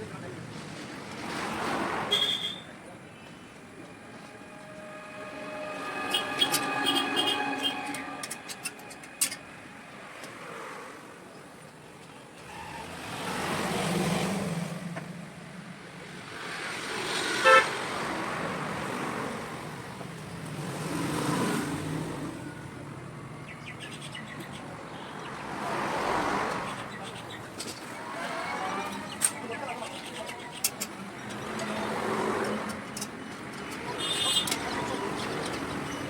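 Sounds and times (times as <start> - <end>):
horn toot: 4.4 - 8.8, 17.4 - 17.7.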